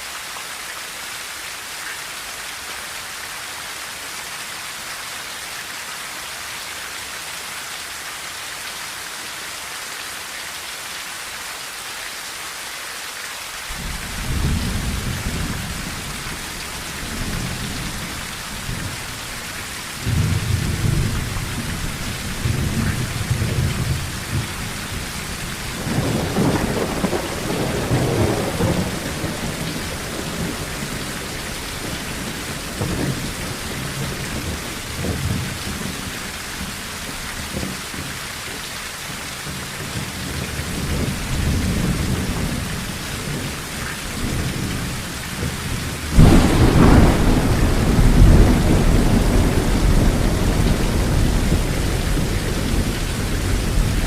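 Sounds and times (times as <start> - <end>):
rain on a tin roof: 0.0 - 54.0
rolling thunder: 13.8 - 36.0, 44.1 - 54.0.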